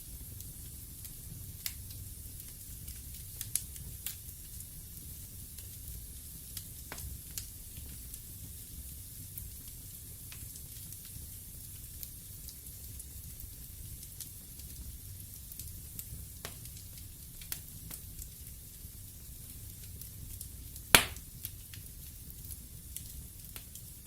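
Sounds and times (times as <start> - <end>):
fire hissing and rumbling: 0.0 - 24.0
logs crackling and popping: 0.5 - 4.6, 5.5 - 8.4, 11.9 - 24.0.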